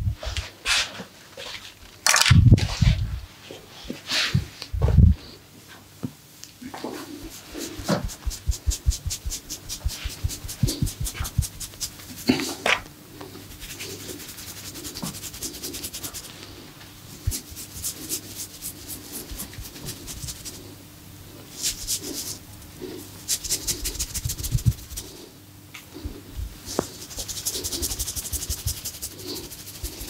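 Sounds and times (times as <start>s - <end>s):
hands massaging skin: 7.0s - 20.7s, 21.4s - 25.2s, 26.6s - 30.0s.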